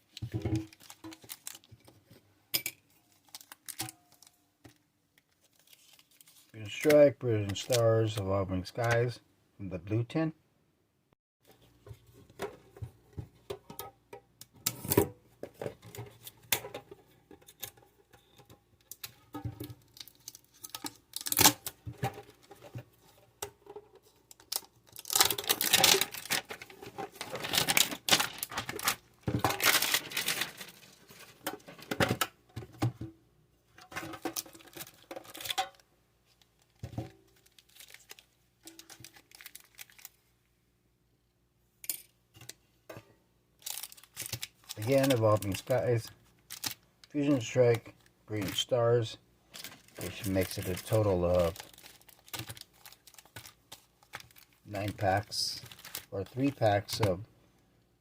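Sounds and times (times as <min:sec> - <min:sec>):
plastic packaging tearing and crinkling: 0:00.0 - 0:02.0, 0:03.1 - 0:04.4, 0:05.2 - 0:07.8, 0:18.9 - 0:22.5, 0:24.3 - 0:32.0, 0:34.0 - 0:35.8, 0:36.5 - 0:40.3, 0:43.6 - 0:47.6, 0:48.3 - 0:48.7, 0:49.5 - 0:57.2.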